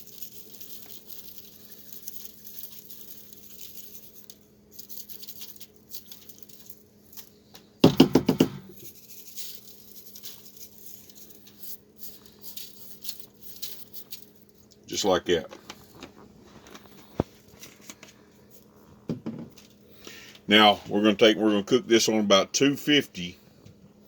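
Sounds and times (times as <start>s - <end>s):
seasoning granules pattering: 0.0s - 7.5s, 8.7s - 18.8s
shaker rattling: 0.0s - 19.9s.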